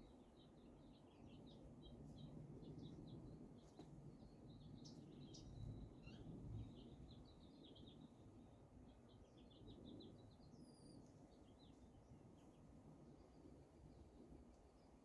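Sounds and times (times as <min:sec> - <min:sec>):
faint bird chirping: 0:00.0 - 0:15.0.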